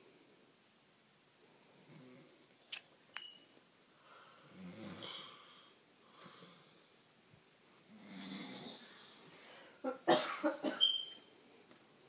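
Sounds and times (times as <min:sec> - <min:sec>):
man snoring: 0:04.5 - 0:05.5, 0:07.9 - 0:08.9.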